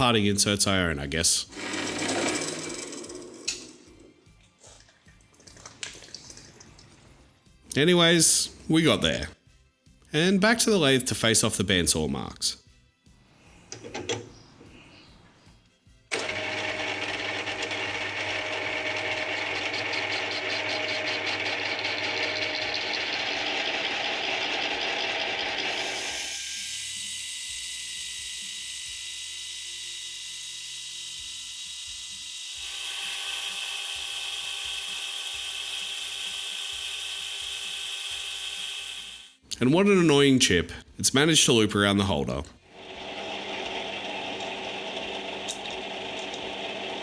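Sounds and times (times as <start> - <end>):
metal lathe machining: 1.5 - 3.9, 16.2 - 39.4, 42.8 - 47.0.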